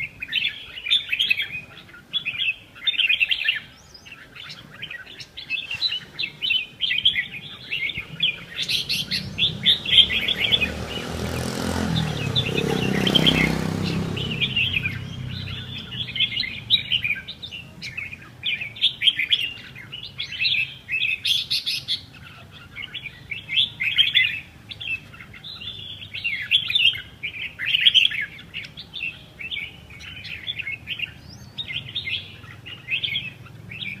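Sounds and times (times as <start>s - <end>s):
small birds chirping: 0.0s - 34.0s.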